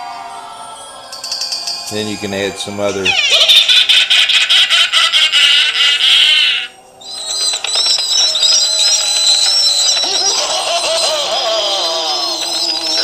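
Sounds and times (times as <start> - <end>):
eerie wavering high tones: 0.0 - 4.5, 5.2 - 13.0.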